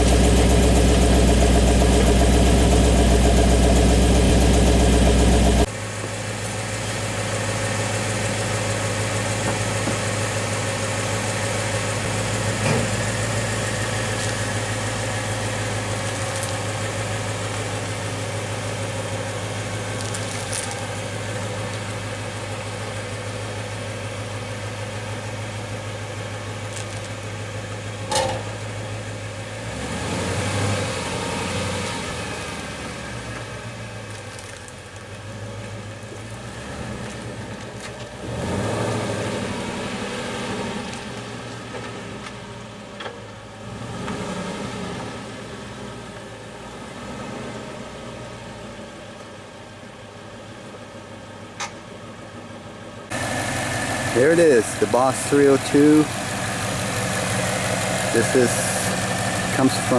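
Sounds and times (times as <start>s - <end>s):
car engine idling: 0.0s - 30.3s, 47.7s - 59.9s.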